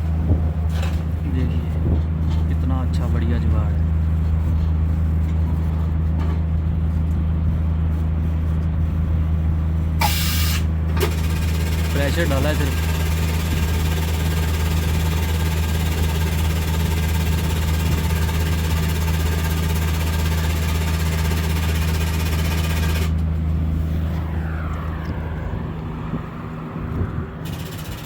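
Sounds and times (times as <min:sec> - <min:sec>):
engine humming: 0:00.0 - 0:28.0
compressed air rushing: 0:23.1 - 0:28.0.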